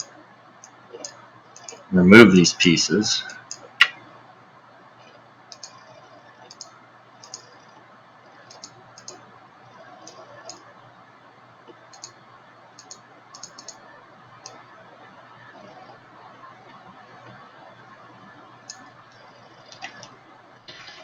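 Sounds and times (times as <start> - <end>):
computer mouse clicking: 0.0 - 1.9, 3.3 - 4.0, 5.5 - 5.8, 6.5 - 7.6, 8.4 - 9.2, 10.0 - 10.7, 11.7 - 12.2, 12.8 - 13.8
faint room hiss: 0.0 - 21.0.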